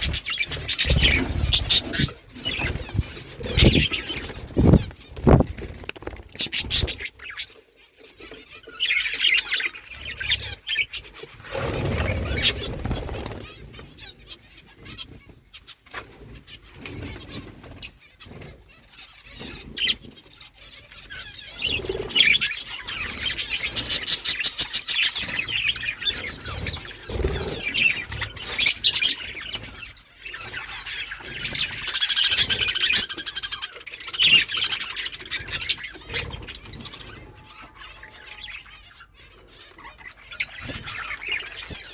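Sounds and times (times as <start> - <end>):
budgerigars chirping: 0.0 - 5.1, 6.4 - 15.8, 16.9 - 41.9
wings flapping: 0.0 - 7.1, 11.4 - 14.0, 26.5 - 29.8.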